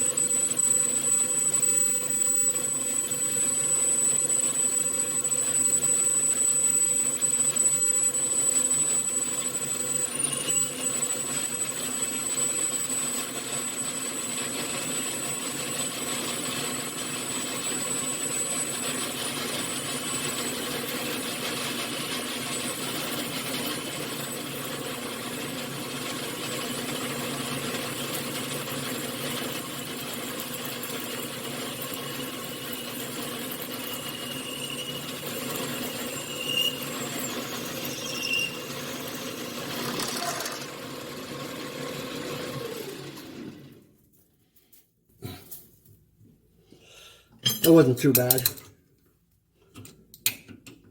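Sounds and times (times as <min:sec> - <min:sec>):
lathe running: 0:08.7 - 0:43.7.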